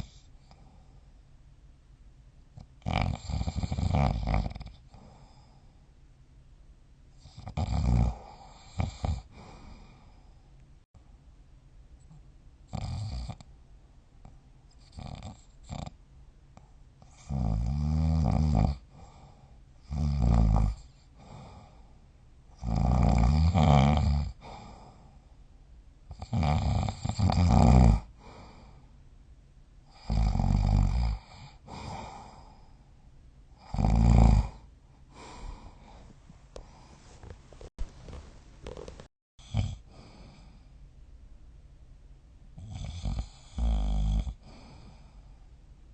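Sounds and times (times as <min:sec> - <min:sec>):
quiet breathing: 0:00.0 - 0:01.4, 0:04.6 - 0:06.1, 0:07.1 - 0:11.3, 0:18.8 - 0:19.9, 0:20.7 - 0:22.6, 0:24.3 - 0:25.7, 0:28.0 - 0:29.1, 0:31.1 - 0:33.6, 0:34.4 - 0:41.0, 0:42.6 - 0:45.9
person snoring: 0:02.8 - 0:05.6, 0:07.2 - 0:10.2, 0:22.6 - 0:25.0, 0:26.2 - 0:28.7, 0:29.9 - 0:32.7, 0:33.6 - 0:37.3, 0:38.1 - 0:40.6, 0:42.6 - 0:45.3.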